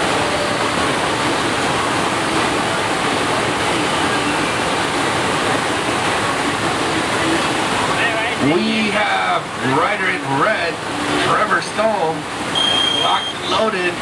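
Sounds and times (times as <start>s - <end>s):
rushing water: 0.0s - 14.0s.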